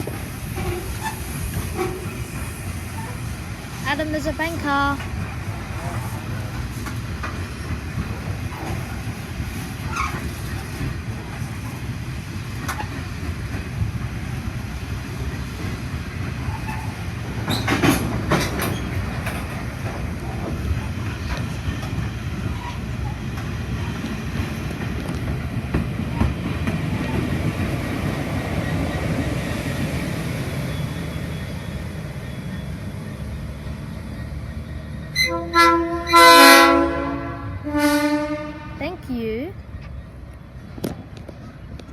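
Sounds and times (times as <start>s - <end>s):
clickety-clack over rail joints: 0.0s - 38.8s, 39.6s - 41.9s
freight train wagons rolling: 0.0s - 41.9s
train rattle: 0.0s - 41.9s
train horn: 35.2s - 38.8s.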